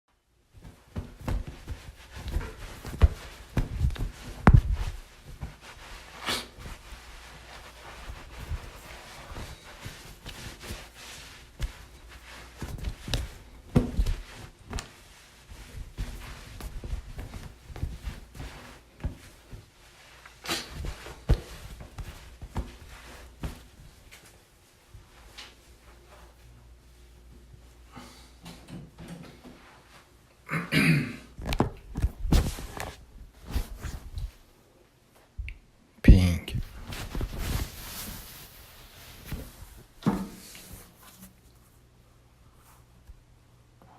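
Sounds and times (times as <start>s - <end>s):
towel rubbing and thumping: 0.3s - 26.5s, 31.4s - 34.5s, 36.6s - 41.6s
towel swish: 0.4s - 27.8s, 32.0s - 34.5s, 36.6s - 41.8s.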